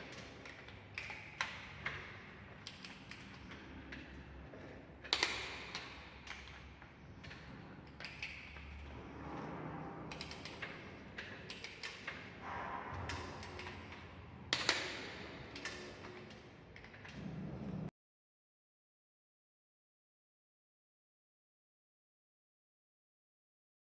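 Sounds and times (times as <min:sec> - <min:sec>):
hand tool clicking and ratcheting: 0:10.1 - 0:12.3, 0:13.1 - 0:17.0.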